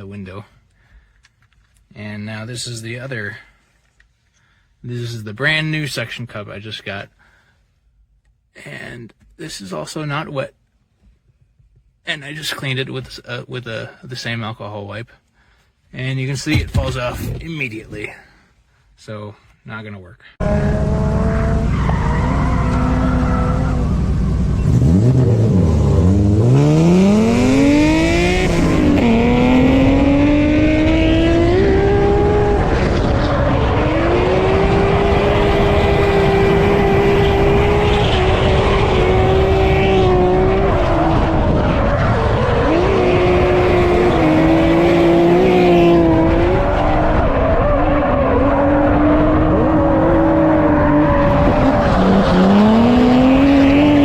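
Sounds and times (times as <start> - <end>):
car engine revving high: 20.4 - 54.0.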